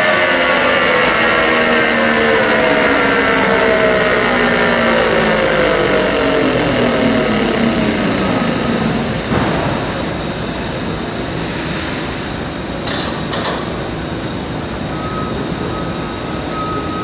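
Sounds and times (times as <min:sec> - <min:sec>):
car engine winding down: 0:00.0 - 0:11.4.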